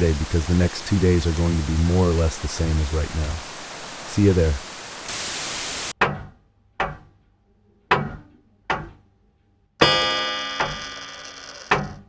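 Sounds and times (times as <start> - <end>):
ringing chime chord: 9.8 - 11.7
clock ticking: 9.8 - 12.0.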